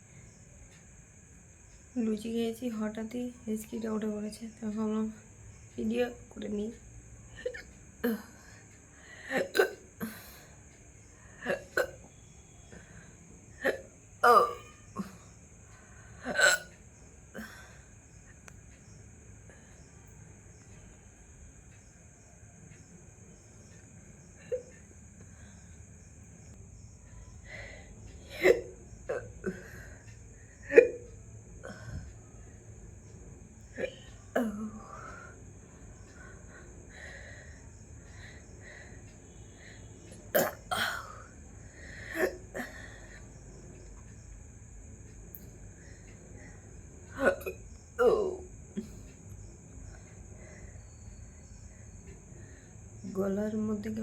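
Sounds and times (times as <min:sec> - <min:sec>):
person hiccuping: 0:09.4 - 0:09.8, 0:11.5 - 0:12.1, 0:13.6 - 0:14.8, 0:16.3 - 0:16.7, 0:40.3 - 0:41.2, 0:47.2 - 0:48.9.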